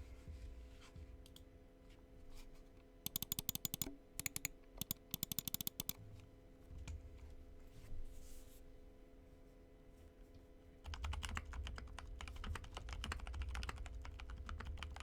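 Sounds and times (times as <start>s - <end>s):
mechanical keyboard typing: 3.1s - 6.0s, 10.8s - 15.0s.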